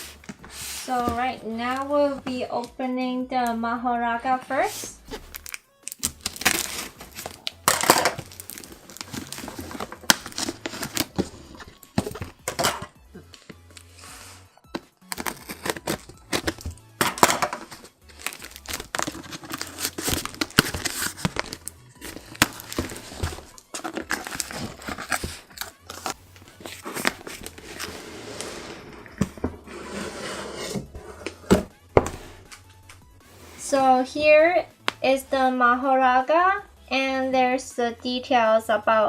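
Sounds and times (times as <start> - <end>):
wrapping crinkling and tearing: 5.0 - 12.3, 15.0 - 28.1
box clicks and knocks: 11.9 - 13.0, 14.7 - 26.2.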